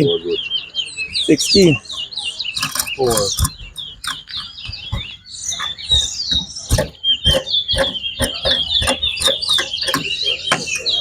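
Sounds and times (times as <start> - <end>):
finches singing: 0.0 - 11.0
sharp clicks: 2.5 - 11.0.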